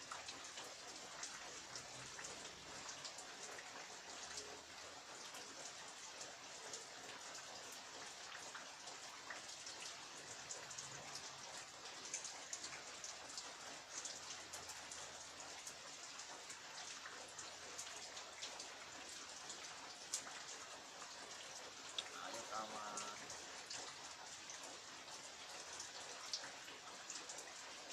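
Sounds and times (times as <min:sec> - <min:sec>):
heavy rain falling: 0:10.4 - 0:27.9.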